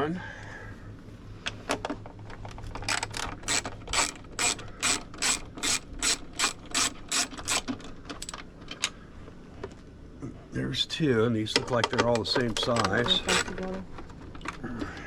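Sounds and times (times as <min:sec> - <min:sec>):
hand ratchet clicking: 0:02.9 - 0:08.4, 0:12.8 - 0:13.6.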